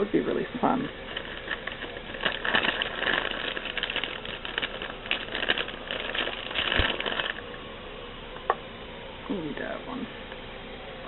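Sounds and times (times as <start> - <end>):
rummaging in bag of glass bulbs: 0.8 - 7.6.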